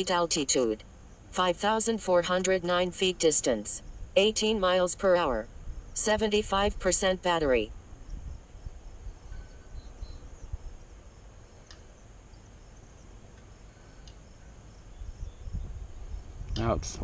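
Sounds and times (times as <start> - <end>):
insects chirping: 0.0 - 16.4
wind rumble on microphone: 5.4 - 7.0, 7.7 - 11.0, 14.9 - 17.0
light ticks: 11.6 - 11.9, 13.4 - 14.2.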